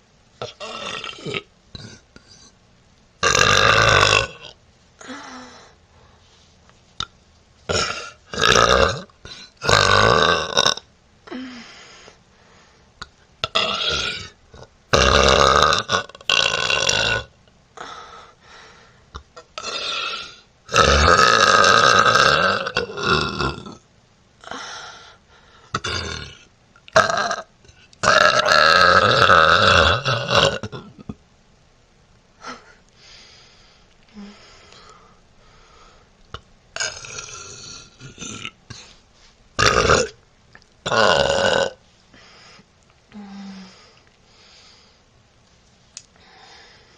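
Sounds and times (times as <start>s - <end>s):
woman burping: 0.4s - 2.6s, 7.7s - 11.4s, 13.4s - 17.3s, 25.8s - 31.2s, 36.8s - 38.9s, 39.6s - 40.2s, 40.8s - 41.8s.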